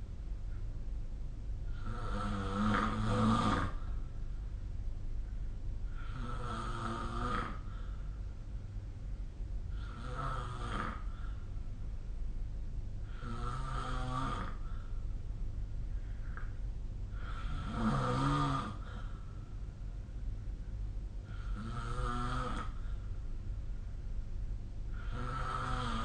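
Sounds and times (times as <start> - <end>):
steady low hum: 0.0 - 26.0
person snoring: 1.7 - 3.9, 5.9 - 7.8, 9.7 - 11.3, 13.0 - 14.8, 17.1 - 19.2, 21.3 - 22.9, 24.9 - 26.0.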